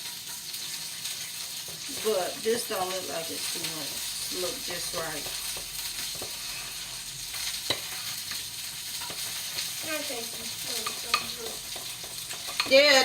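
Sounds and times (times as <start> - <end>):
food sizzling in pan: 0.0 - 13.0
batter stirred in bowl: 1.1 - 13.0
utensil tapping bowl: 10.4 - 13.0.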